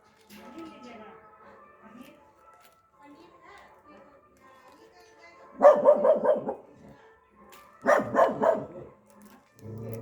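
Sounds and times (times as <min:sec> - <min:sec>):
dog barking: 0:05.6 - 0:06.7, 0:07.8 - 0:08.9.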